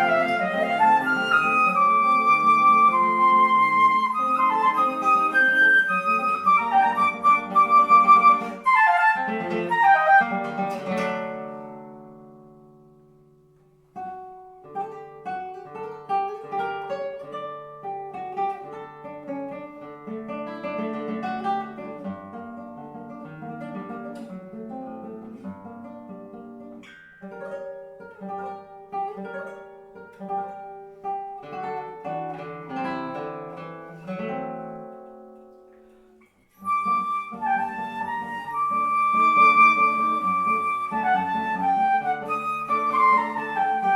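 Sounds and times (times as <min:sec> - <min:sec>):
flute melody: 0:00.0 - 0:11.2, 0:36.5 - 0:43.9
plucked classical guitar: 0:00.0 - 0:43.9.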